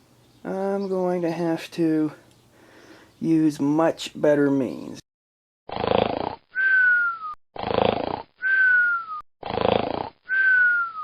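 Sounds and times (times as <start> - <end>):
cartoon snoring: 5.7 - 6.9, 7.6 - 10.7
falling whistle: 6.6 - 7.4, 8.4 - 9.2, 10.3 - 11.0.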